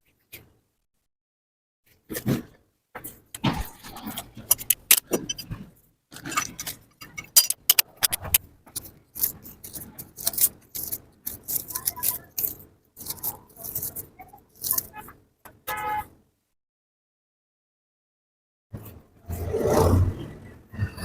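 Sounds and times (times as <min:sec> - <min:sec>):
metal tools clinking and scraping: 0:04.0 - 0:05.6, 0:06.2 - 0:15.0.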